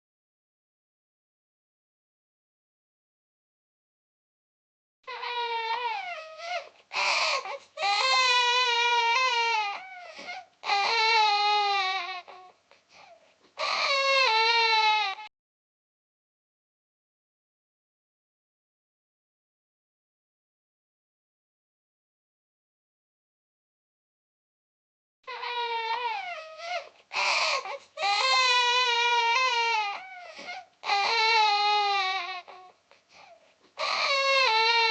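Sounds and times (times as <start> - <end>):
young child crying: 33.8 - 34.9.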